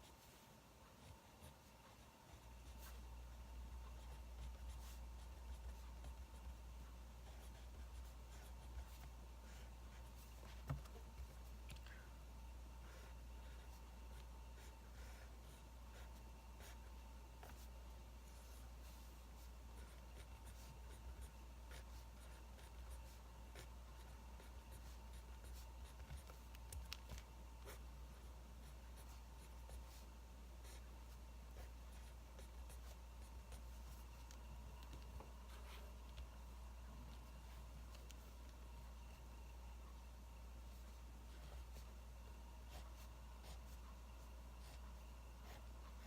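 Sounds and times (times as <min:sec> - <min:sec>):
pen scratching on paper: 0:00.0 - 0:11.4, 0:12.8 - 0:17.7, 0:19.4 - 0:36.0, 0:42.6 - 0:44.0
steady low hum: 0:00.0 - 0:46.0.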